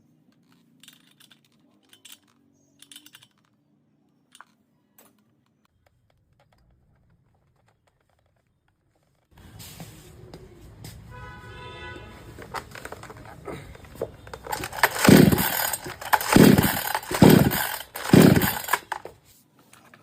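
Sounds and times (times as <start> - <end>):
hand tools clicking and tapping: 12.4 - 19.2.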